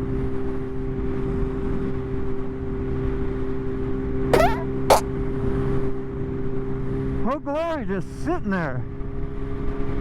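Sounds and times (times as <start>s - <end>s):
short squeak: 4.4s - 5.0s.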